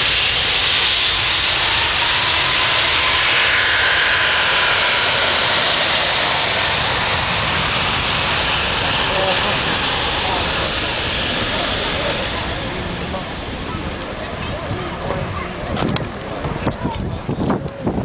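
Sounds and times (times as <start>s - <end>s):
jet engines at takeoff power: 0.0s - 18.0s.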